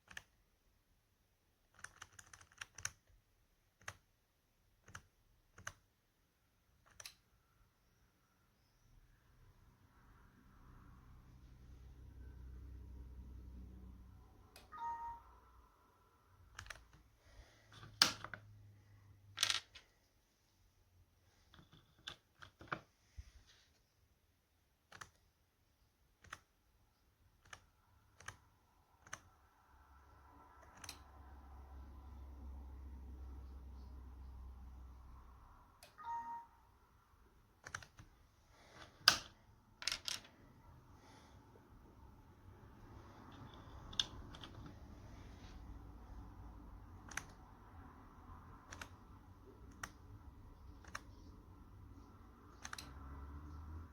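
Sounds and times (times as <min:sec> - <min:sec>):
short electronic tone: 0:14.7 - 0:15.4, 0:36.0 - 0:36.6
sharp clicks: 0:47.0 - 0:47.4, 0:52.5 - 0:53.0.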